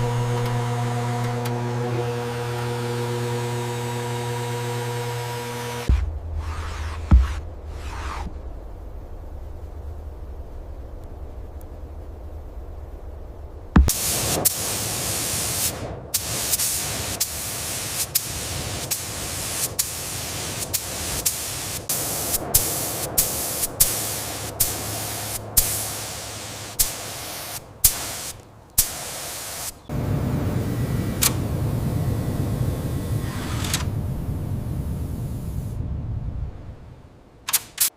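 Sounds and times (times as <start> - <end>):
spraying hiss: 13.8 - 35.8, 37.5 - 37.9
sharp clicks: 31.2 - 31.4, 37.4 - 37.9.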